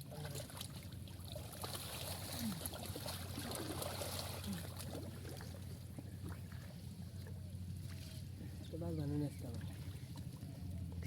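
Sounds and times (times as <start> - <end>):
small splashes and knocks: 0.0 - 8.3
water trickling and lapping: 0.0 - 11.0.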